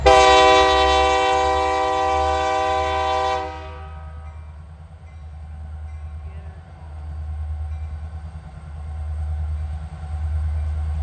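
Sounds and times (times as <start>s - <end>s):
locomotive air horn blast: 0.0s - 4.2s
low rumble of passing train: 0.0s - 11.0s.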